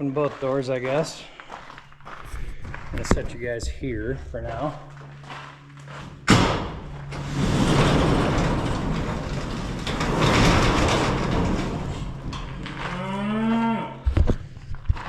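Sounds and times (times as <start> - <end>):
door rolling open: 5.8 - 14.1.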